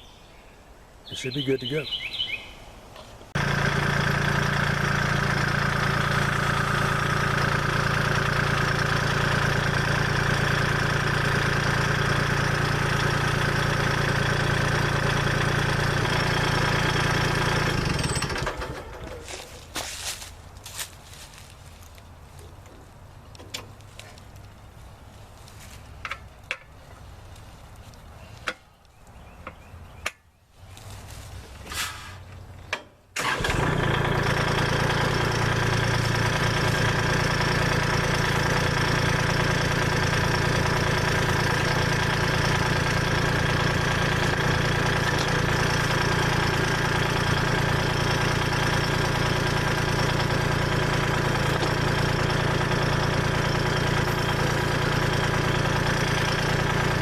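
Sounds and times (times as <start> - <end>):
tractor diesel engine running: 3.3 - 23.8, 31.1 - 57.0.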